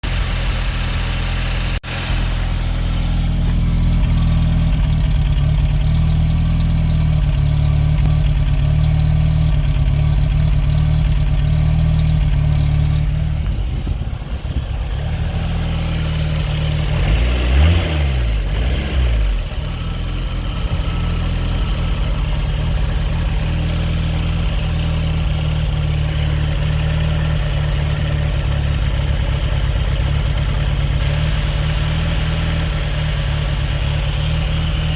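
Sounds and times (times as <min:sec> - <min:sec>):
car engine idling roughly: 0:00.0 - 0:34.9.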